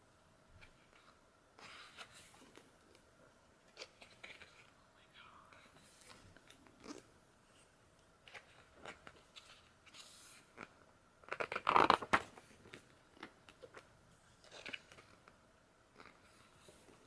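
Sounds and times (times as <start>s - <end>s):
pages turning rustles: 8.2s - 13.8s.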